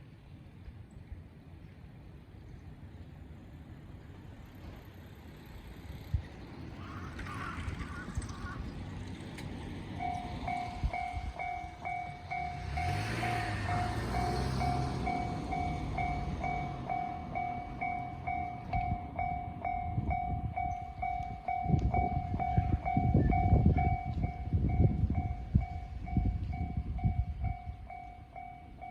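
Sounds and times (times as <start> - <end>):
vehicle passing: 5.9 - 18.7
level crossing warning bell: 9.6 - 28.9.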